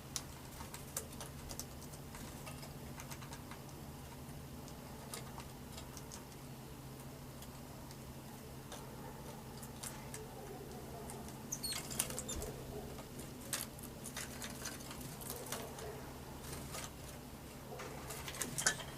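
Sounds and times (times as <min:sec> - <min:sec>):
birds tapping and pecking: 0:00.0 - 0:18.9.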